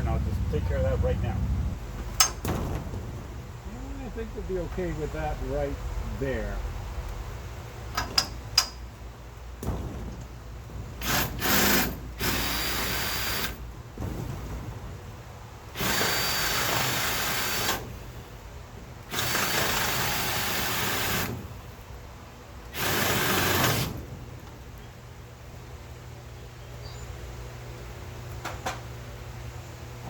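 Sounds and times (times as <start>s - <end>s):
handheld power tool running: 11.0s - 13.6s, 15.8s - 17.8s, 19.1s - 21.3s.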